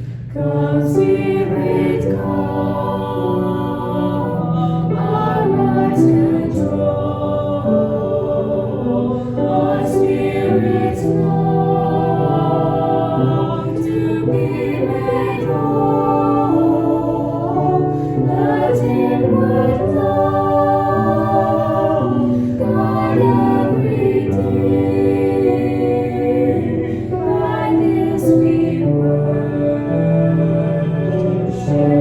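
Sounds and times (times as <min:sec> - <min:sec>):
choir singing a hymn: 0:00.0 - 0:32.0.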